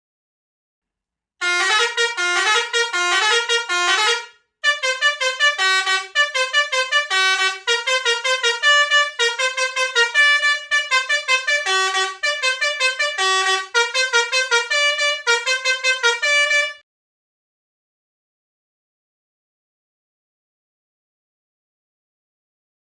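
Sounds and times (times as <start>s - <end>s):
multi-tone bus horn melody: 1.4s - 16.8s.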